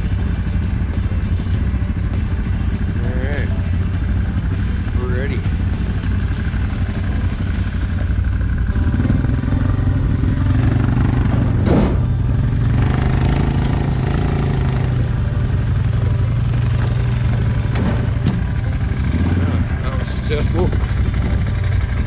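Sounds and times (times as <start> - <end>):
quad engine running: 0.0 - 22.0.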